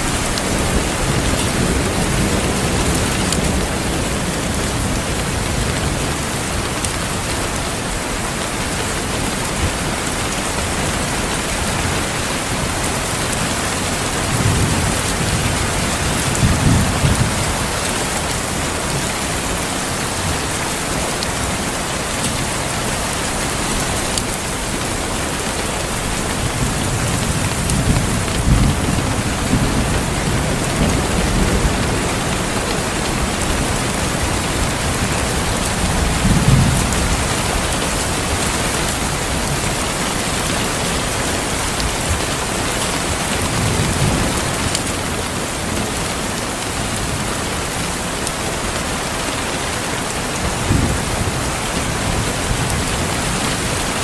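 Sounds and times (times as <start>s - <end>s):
heavy rain hissing: 0.0s - 54.0s
distant thunder rumbles: 12.5s - 21.6s, 25.9s - 40.3s.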